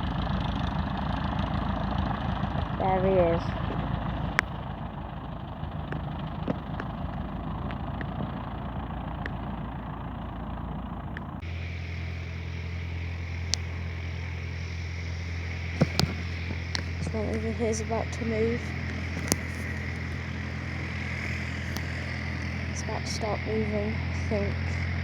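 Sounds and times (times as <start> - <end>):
light aircraft engine and propeller: 0.0 - 25.0
light clicks: 18.7 - 22.6.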